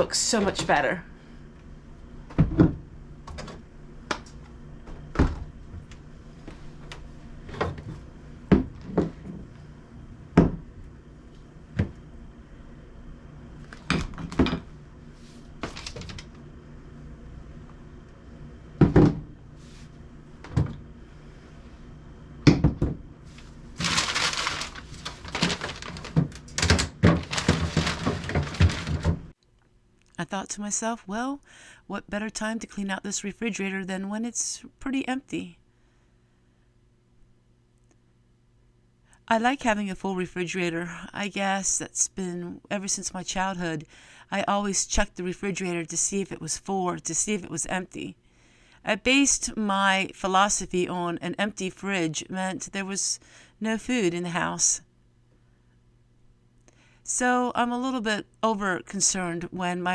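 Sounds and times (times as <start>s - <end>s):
faint steady hum: 0.0s - 59.9s
food containers and drawers clattering: 23.8s - 29.3s.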